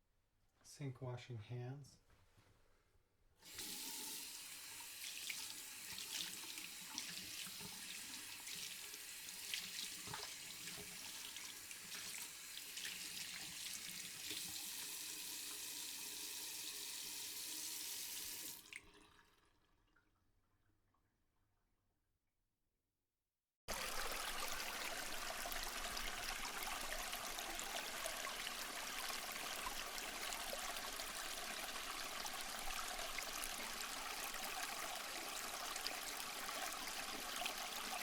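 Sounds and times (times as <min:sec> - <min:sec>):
tap water running into a sink: 0:03.4 - 0:20.1, 0:23.7 - 0:38.0
hands washing with splashes: 0:03.5 - 0:14.6.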